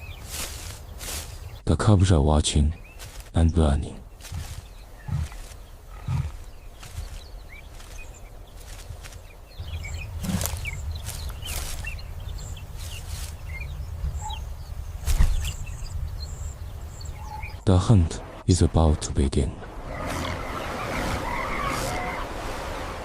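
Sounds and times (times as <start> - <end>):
high bird chirps: 4.0 - 17.7.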